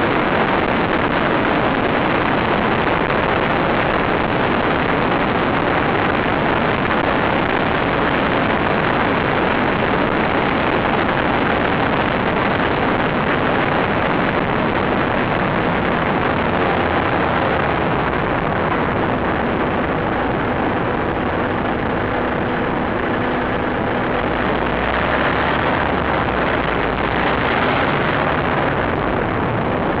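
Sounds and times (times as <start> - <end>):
faint steady hum: 0.0 - 30.0
vehicle road and wind noise: 0.0 - 30.0.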